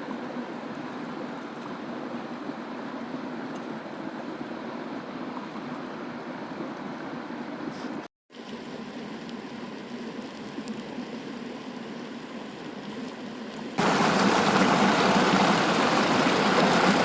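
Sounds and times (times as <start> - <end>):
river water rushing: 13.8 - 17.0.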